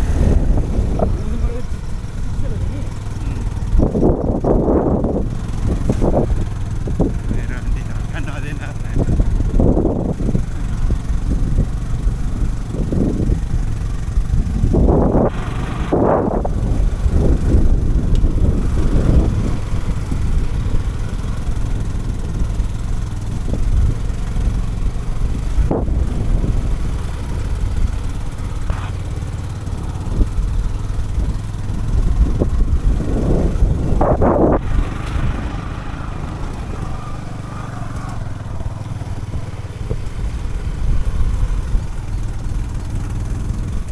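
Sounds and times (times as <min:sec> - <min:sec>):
motorcycle engine rumbling: 0:00.0 - 0:43.9.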